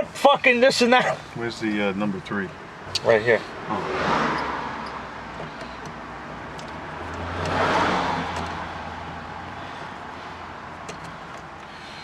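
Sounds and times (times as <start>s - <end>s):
vehicle passing by: 3.4s - 5.3s, 6.1s - 10.8s.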